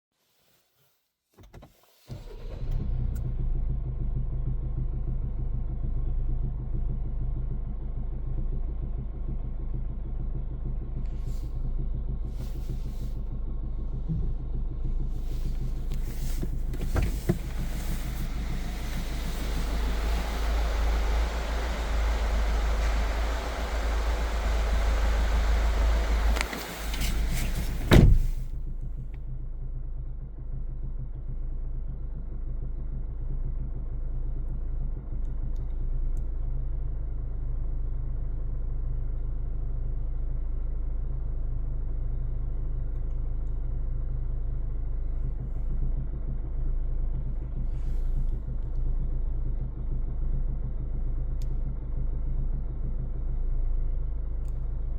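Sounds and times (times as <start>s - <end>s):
diesel engine running at low revs: 2.1s - 54.9s
sharp thump: 15.4s - 28.5s.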